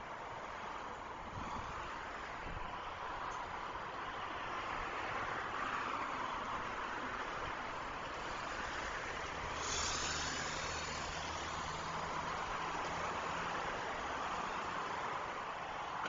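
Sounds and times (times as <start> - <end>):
traffic tyre noise: 0.0 - 16.0
heavy vehicle engine hum: 6.6 - 16.0
sudden hiss: 9.5 - 11.9.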